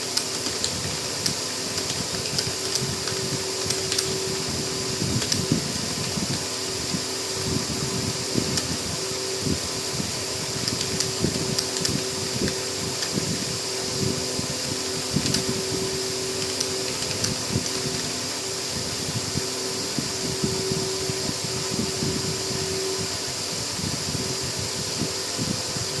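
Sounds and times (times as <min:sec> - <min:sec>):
computer keyboard typing: 0:00.0 - 0:06.5, 0:10.5 - 0:13.4, 0:14.6 - 0:15.7, 0:16.3 - 0:18.2
fan humming: 0:00.0 - 0:26.0.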